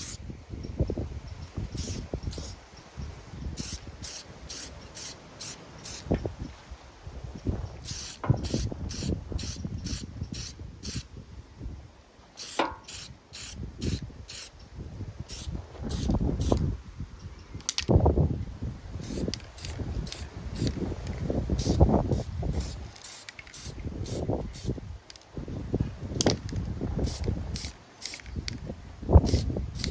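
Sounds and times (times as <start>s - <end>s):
aerosol spray paint bursts: 0.0s - 0.2s, 1.7s - 2.6s, 3.5s - 6.1s, 7.8s - 11.1s, 12.4s - 14.5s, 15.3s - 16.6s, 19.0s - 20.8s, 21.5s - 24.8s, 27.0s - 28.2s, 29.2s - 29.9s
wind rumble on microphone: 0.0s - 5.1s, 5.8s - 12.1s, 12.8s - 29.9s.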